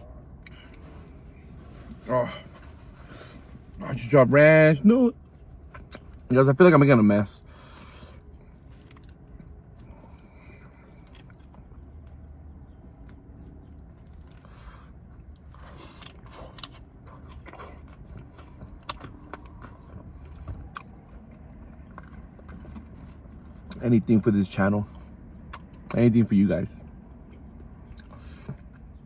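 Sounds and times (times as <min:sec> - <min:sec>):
low steady hum: 0:00.0 - 0:29.0
person chewing and biting food: 0:07.6 - 0:23.8.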